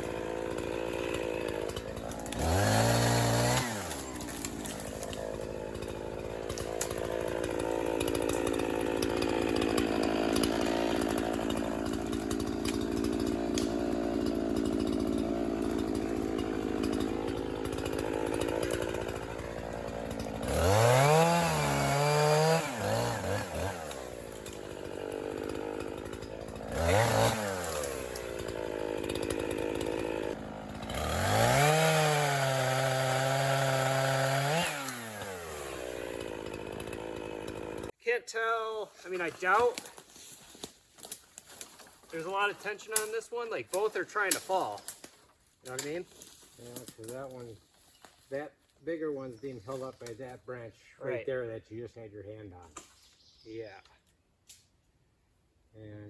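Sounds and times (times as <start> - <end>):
chainsaw cutting wood: 0.0 - 38.0, 39.1 - 47.4
chainsaw revving: 0.0 - 38.0.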